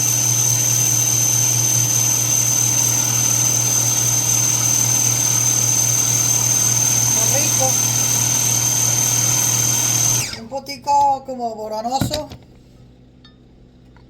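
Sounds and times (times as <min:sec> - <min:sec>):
blender grinding nuts: 0:00.0 - 0:10.5.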